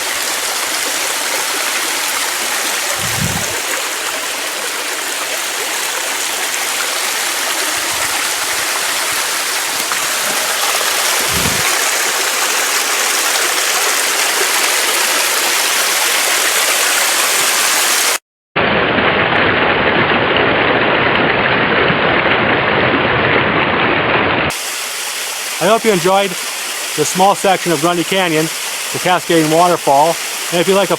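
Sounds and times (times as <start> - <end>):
small waterfall over rock: 0.0 - 18.2, 24.5 - 30.9.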